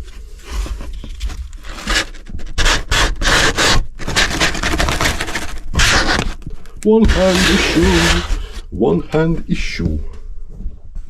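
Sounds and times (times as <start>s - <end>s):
cardboard box scraping and rustling: 0.0s - 8.7s.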